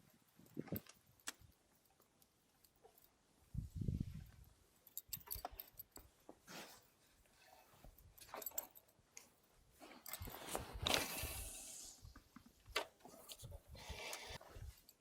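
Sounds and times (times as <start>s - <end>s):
small scattered clicks: 0.3s - 3.2s.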